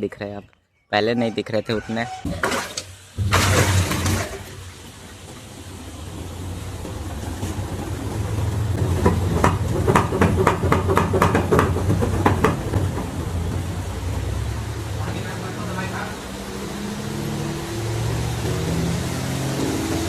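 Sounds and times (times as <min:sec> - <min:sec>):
washing machine humming: 0:01.9 - 0:20.0
washing machine knocking and rattling: 0:02.3 - 0:16.6.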